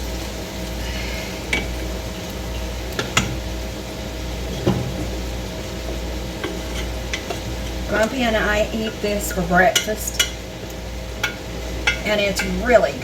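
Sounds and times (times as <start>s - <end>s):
air conditioner hum: 0.0s - 13.0s
spoon stirring in a pot: 4.5s - 13.0s
spoon knocking and scraping pot: 9.7s - 10.4s, 11.2s - 12.7s.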